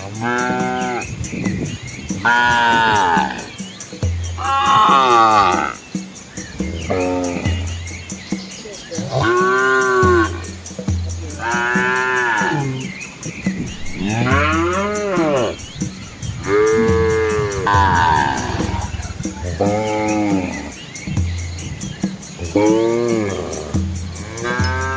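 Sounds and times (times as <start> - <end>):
cattle mooing: 17.4 - 19.8.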